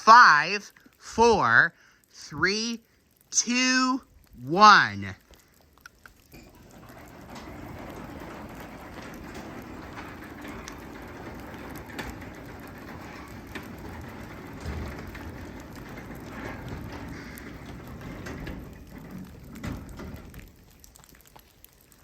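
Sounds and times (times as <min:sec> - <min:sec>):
rain falling: 0:00.0 - 0:22.0
garage door opener closing: 0:06.3 - 0:20.7.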